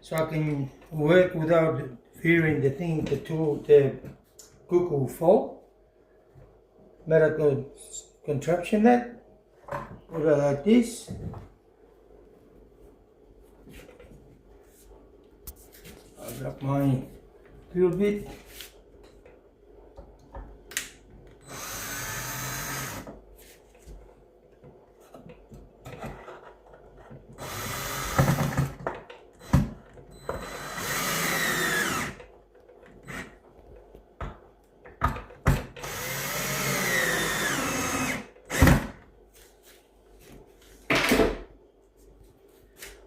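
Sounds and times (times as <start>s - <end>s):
electric drill running: 21.4s - 23.1s, 27.4s - 28.5s, 30.2s - 32.2s, 35.8s - 38.3s.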